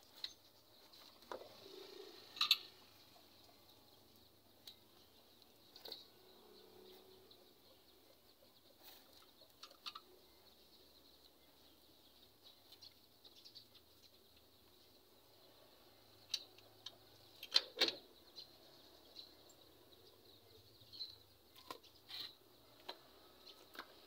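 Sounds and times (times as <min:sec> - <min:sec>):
background hiss: 0:00.0 - 0:07.7.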